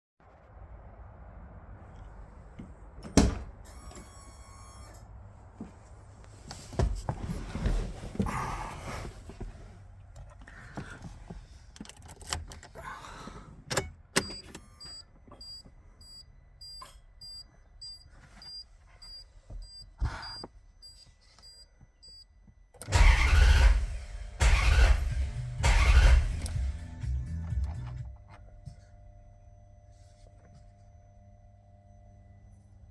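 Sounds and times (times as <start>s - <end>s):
car engine cranking: 10.0s - 14.7s, 22.8s - 28.4s
electronic warning beeps: 14.2s - 22.3s.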